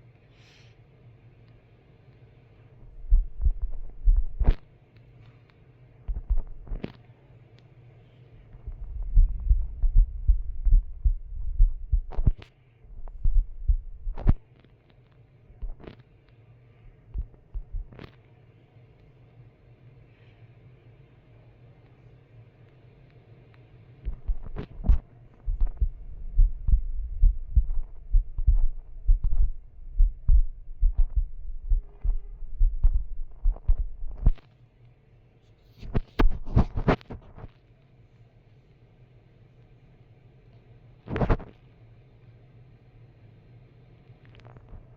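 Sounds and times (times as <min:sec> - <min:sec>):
deep thumps and knocks: 0:08.6 - 0:12.4, 0:13.0 - 0:14.4, 0:17.1 - 0:18.0, 0:24.1 - 0:34.4.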